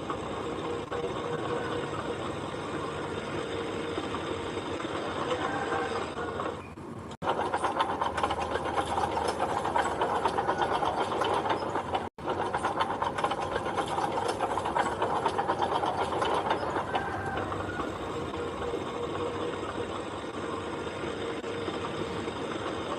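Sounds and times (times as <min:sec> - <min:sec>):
machinery rhythmic clatter: 0:00.0 - 0:22.9.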